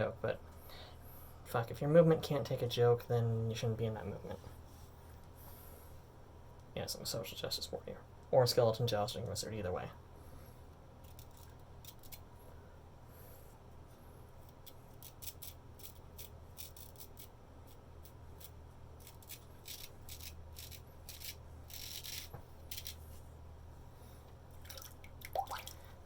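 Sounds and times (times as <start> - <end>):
straight razor scraping stubble: 14.6 - 23.2.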